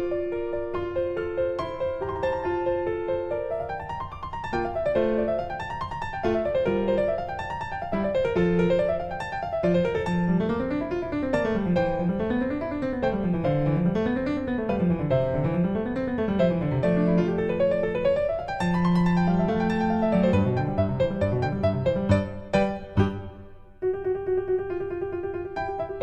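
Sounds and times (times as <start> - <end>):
piano arpeggio music: 0.0 - 26.0.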